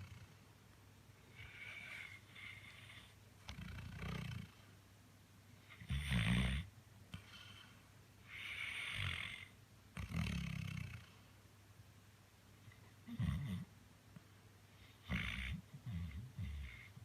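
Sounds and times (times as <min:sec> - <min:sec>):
dog snoring: 0:00.0 - 0:00.4, 0:01.3 - 0:04.6, 0:05.7 - 0:07.6, 0:08.3 - 0:11.1, 0:13.0 - 0:13.7, 0:14.8 - 0:17.0.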